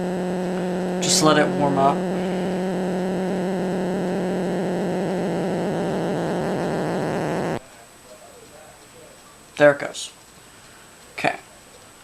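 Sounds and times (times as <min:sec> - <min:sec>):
speaker hum and hiss: 0:00.0 - 0:12.0.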